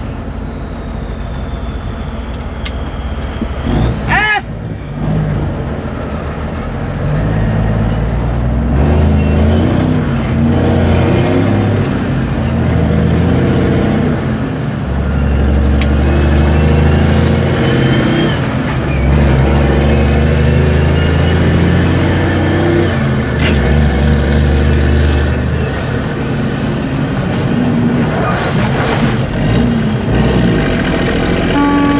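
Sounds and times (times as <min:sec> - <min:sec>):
diesel truck engine running: 0:00.0 - 0:31.9.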